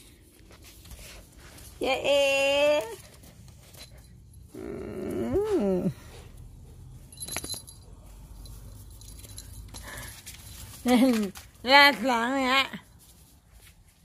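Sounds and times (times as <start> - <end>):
metallic clink: 7.0 - 10.6.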